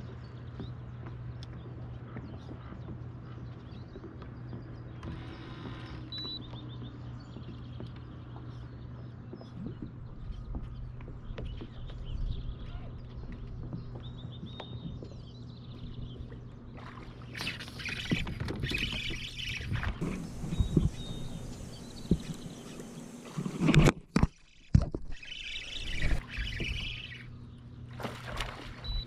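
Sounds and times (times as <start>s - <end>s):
small birds chirping trills: 0.1s - 23.6s, 24.5s - 29.0s
steady low hum: 15.2s - 23.8s.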